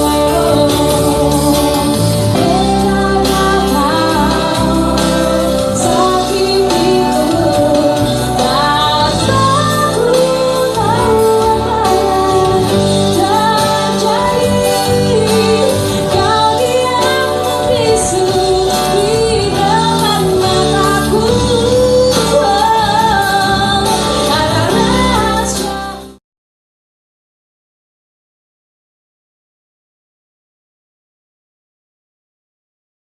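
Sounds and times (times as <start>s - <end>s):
band playing pop song: 0.0s - 26.2s
person singing: 0.0s - 26.2s.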